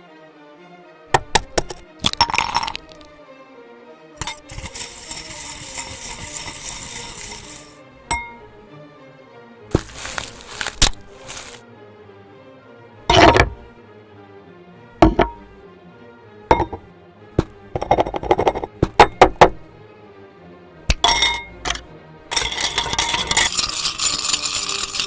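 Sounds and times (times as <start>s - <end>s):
soft background music: 0.0s - 25.0s
hard objects clinking: 1.2s - 3.1s, 4.2s - 8.4s, 9.7s - 11.6s, 15.0s - 15.4s, 16.5s - 16.8s, 20.9s - 25.0s
dense rustling: 9.7s - 11.6s.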